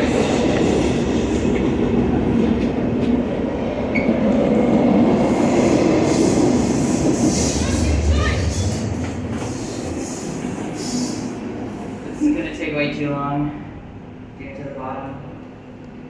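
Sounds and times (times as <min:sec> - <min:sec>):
freight train rumbling on rails: 0:00.0 - 0:16.0.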